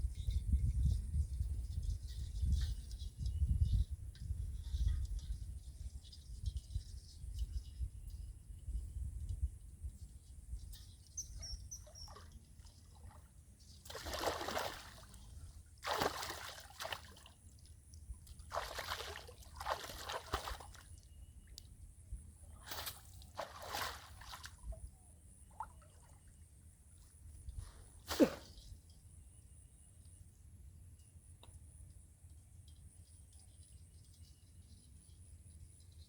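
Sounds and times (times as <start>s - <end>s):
water splashing and sloshing: 11.8s - 21.0s, 22.5s - 27.1s.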